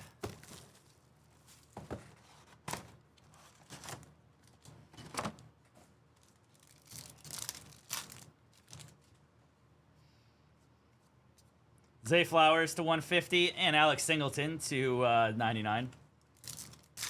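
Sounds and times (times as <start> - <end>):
card packs tearing and crinkling: 6.2 - 9.1, 16.4 - 17.0.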